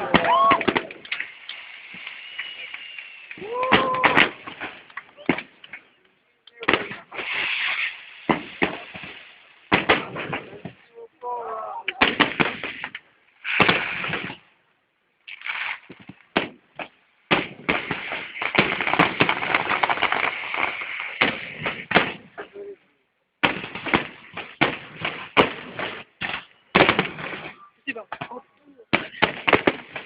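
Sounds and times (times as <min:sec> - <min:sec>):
fireworks bangs: 0:00.0 - 0:05.9, 0:06.6 - 0:10.9, 0:11.8 - 0:14.5, 0:15.3 - 0:22.6, 0:23.4 - 0:30.0
fireworks crackling: 0:00.0 - 0:11.0, 0:11.8 - 0:14.6, 0:15.2 - 0:22.7, 0:23.4 - 0:30.0.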